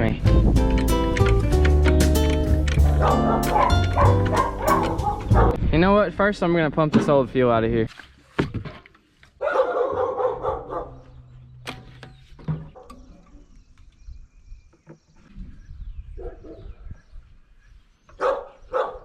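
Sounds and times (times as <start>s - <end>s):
dogs barking: 2.7s - 5.6s, 9.4s - 11.2s, 12.7s - 13.0s, 16.2s - 16.7s, 18.2s - 19.0s.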